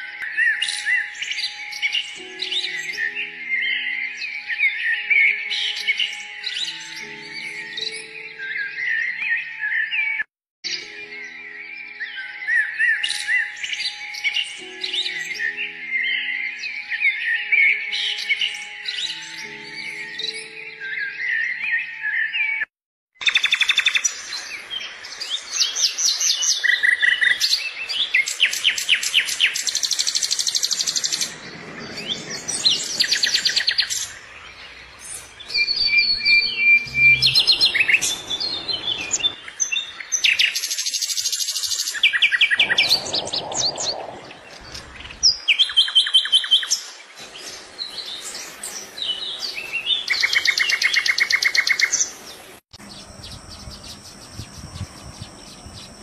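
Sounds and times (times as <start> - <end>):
small birds chirping: 23.3 - 56.0.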